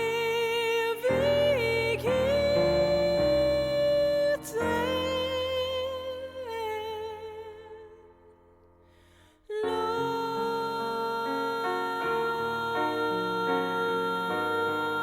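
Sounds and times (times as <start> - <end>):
piano chords: 0.0 - 15.0.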